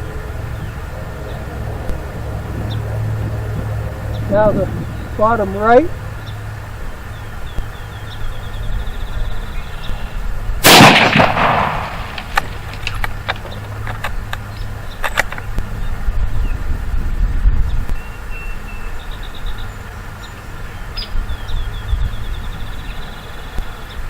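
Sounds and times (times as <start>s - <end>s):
rifle shot with echo: 10.6s - 13.0s.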